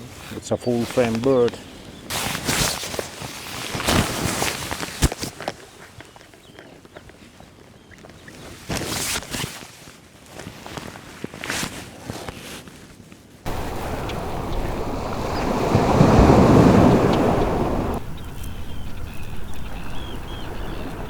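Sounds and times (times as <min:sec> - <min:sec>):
sea surf washing ashore: 0:13.5 - 0:21.0
shorebirds chirping: 0:13.5 - 0:21.0.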